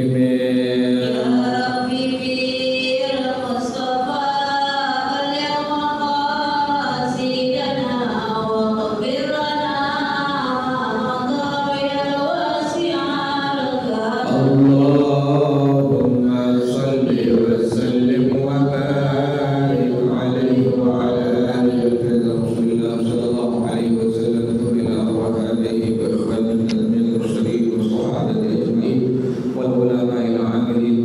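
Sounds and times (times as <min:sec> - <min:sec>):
group chanting in unison: 0:00.0 - 0:01.8, 0:14.2 - 0:22.9.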